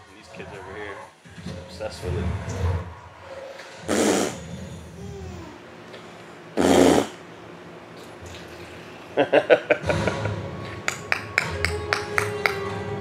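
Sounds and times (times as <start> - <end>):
plucked background music: 9.8 - 13.0.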